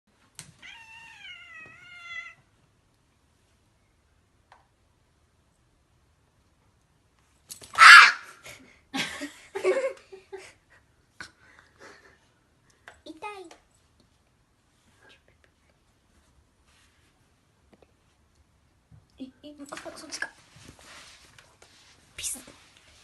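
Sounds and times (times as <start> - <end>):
cat meowing angrily: 0.6 - 2.4, 7.8 - 8.3.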